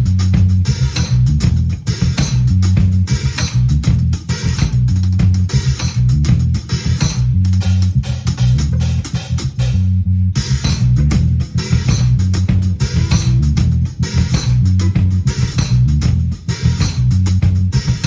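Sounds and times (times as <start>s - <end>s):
bass guitar: 0.0s - 18.0s
drum kit: 0.0s - 18.0s
guitar: 10.6s - 18.0s.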